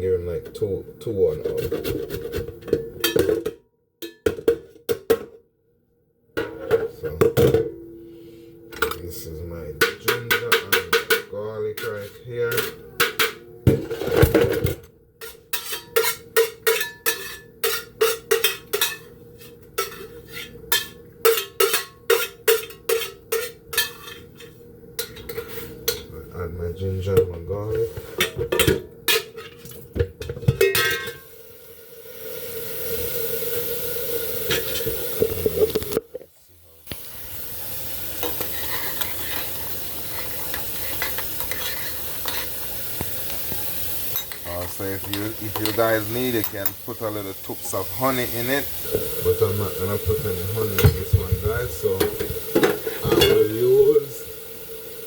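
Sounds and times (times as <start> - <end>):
pot sizzling and bubbling: 6.4 - 55.0
metal utensils clinking: 14.2 - 19.2, 28.2 - 31.3, 44.0 - 54.1
utensils scraping metal kitchenware: 15.2 - 26.1, 38.2 - 43.4, 44.0 - 54.0.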